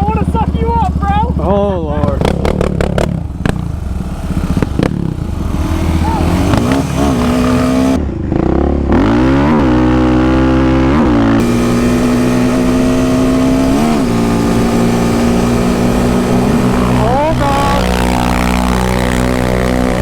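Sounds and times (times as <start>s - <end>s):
quad engine revving high: 0.0s - 20.0s.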